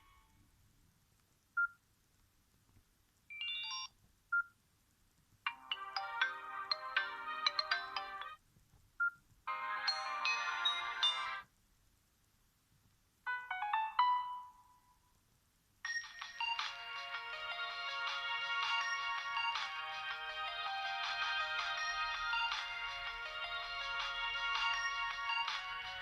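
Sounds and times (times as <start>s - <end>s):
polyphonic ringtones from phone speaker: 9.5s - 11.4s.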